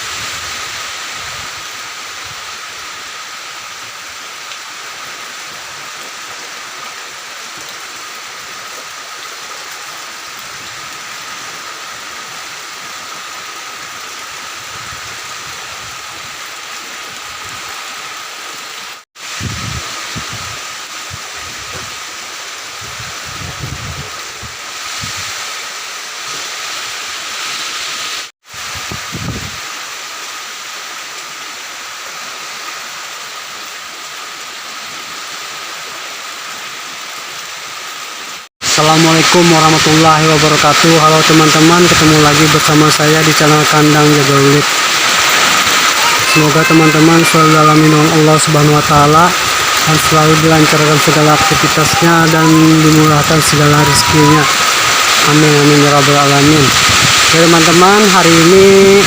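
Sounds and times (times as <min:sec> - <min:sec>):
wind gusting against microphone: 0:00.0 - 0:03.0, 0:14.4 - 0:16.5, 0:19.2 - 0:25.6, 0:27.8 - 0:29.7, 0:41.3 - 0:59.0
heavy rain falling: 0:00.0 - 0:59.0.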